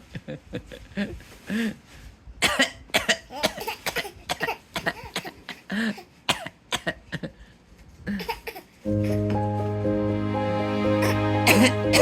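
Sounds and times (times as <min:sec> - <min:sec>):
child coughing playfully: 0:02.4 - 0:07.4, 0:11.0 - 0:12.0
background music with held notes: 0:08.8 - 0:12.0.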